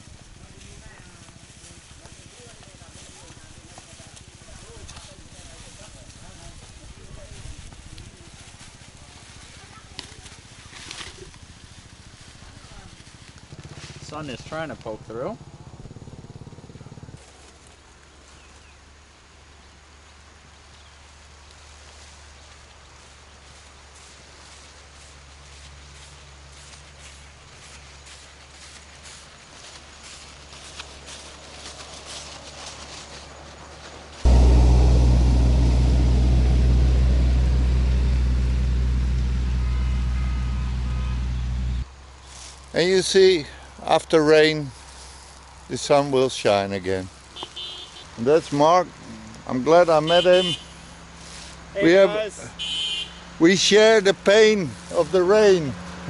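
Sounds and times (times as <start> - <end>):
motorbike engine running: 0.0 - 17.3, 34.3 - 41.8
outdoor background hiss: 0.0 - 56.0.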